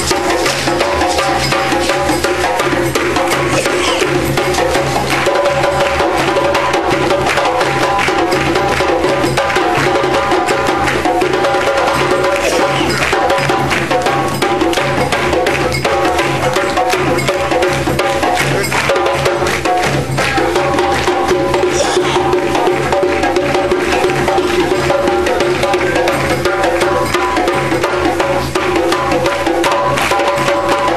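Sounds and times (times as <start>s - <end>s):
live drums and percussion: 0.0s - 30.9s.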